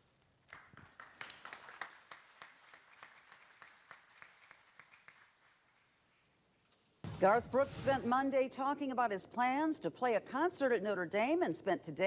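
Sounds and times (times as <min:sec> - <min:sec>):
faint audience applause: 0:00.5 - 0:06.0.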